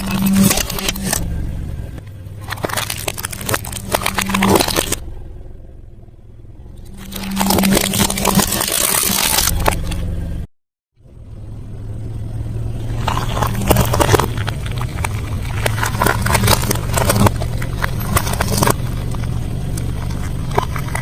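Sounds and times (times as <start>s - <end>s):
crunchy food being chewed: 0.0s - 1.2s, 2.4s - 5.0s, 6.9s - 10.0s, 12.9s - 21.0s.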